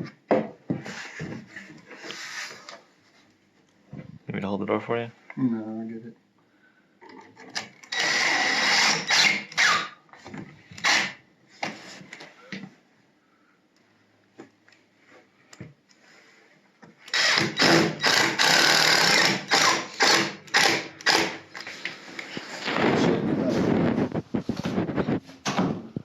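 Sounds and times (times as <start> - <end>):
power drill driving screws: 7.8 - 9.9, 10.8 - 11.2, 17.1 - 21.7.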